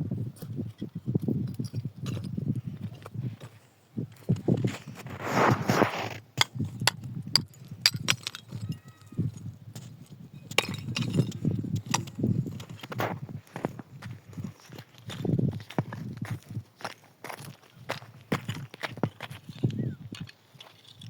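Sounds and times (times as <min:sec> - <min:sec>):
rustling noise: 0:00.5 - 0:06.8, 0:11.2 - 0:16.6.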